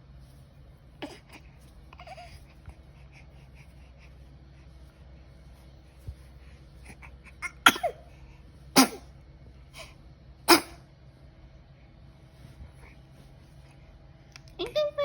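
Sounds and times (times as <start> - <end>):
faint breaths and snuffles: 0.0 - 9.0
baby sneezing: 7.4 - 8.1, 8.8 - 9.1, 10.5 - 10.8.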